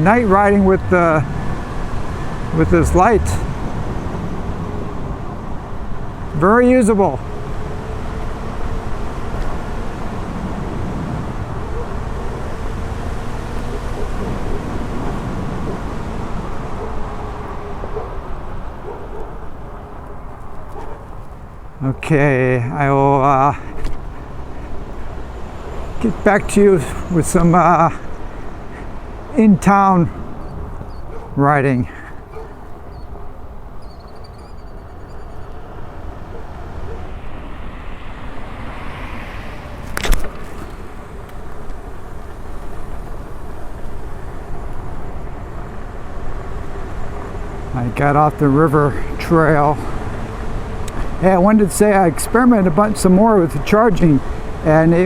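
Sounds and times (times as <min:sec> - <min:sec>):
wind rumble on microphone: 0:00.0 - 0:22.2, 0:23.7 - 0:48.6
tyre on pavement noise: 0:00.0 - 0:51.9
faint wavering whine: 0:33.8 - 0:42.4.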